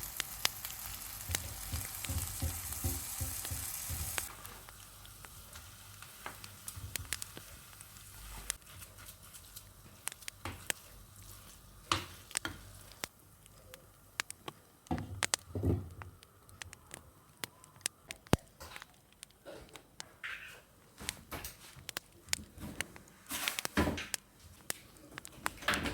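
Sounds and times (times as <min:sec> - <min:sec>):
food sizzling in a frying pan: 0:00.0 - 0:13.1
heavy kitchen knocks: 0:01.2 - 0:04.3.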